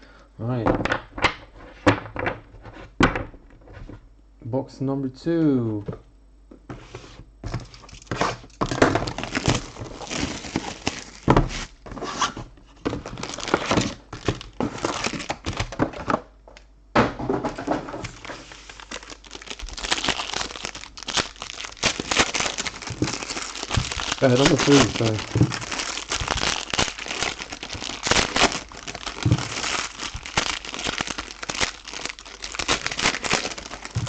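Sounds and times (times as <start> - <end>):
plastic wrapping tearing and crinkling: 7.6 - 16.0, 18.0 - 34.0.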